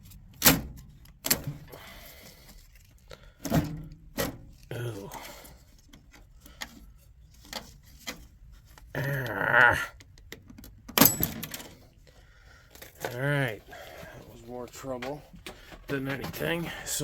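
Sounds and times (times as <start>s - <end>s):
plastic and metal parts clacking: 0.0s - 9.4s, 10.0s - 17.0s.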